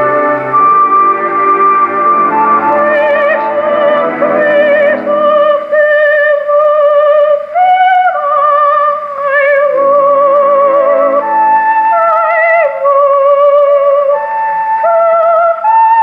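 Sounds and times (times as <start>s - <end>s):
orchestra: 0.0s - 15.8s
soprano singing with vibrato: 0.6s - 16.0s.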